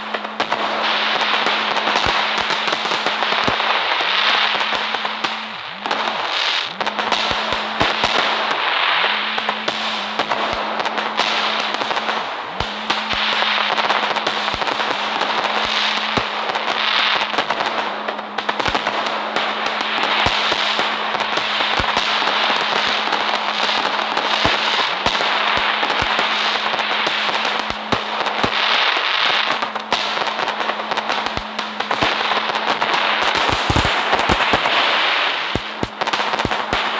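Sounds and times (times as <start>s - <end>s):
firecrackers crackling: 0.0s - 36.9s
sharp firecracker cracks: 0.0s - 36.9s.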